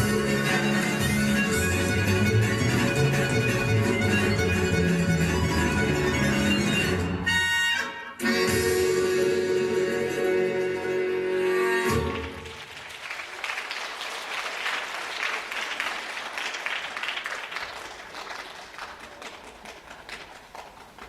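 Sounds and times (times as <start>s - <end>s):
audience applause: 12.2s - 21.0s.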